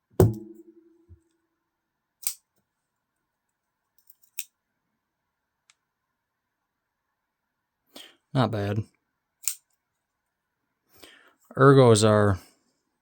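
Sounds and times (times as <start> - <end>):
thump with low ring: 0.2 - 0.9.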